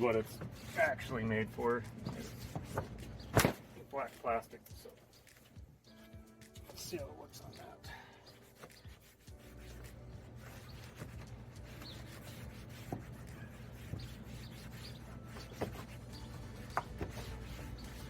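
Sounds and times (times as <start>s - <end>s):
faint rubbing: 8.3s - 18.0s.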